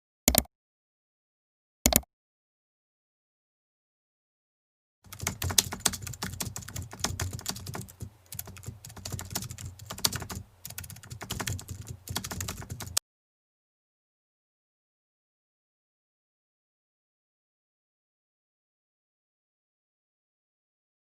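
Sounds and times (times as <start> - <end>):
rapid keyboard typing: 5.1 - 13.0.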